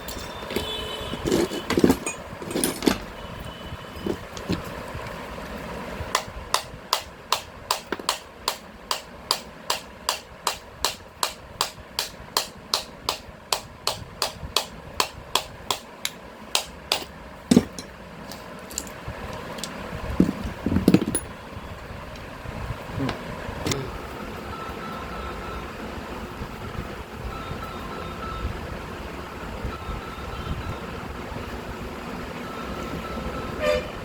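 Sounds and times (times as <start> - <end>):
hammer tapping on metal: 6.2 - 18.0.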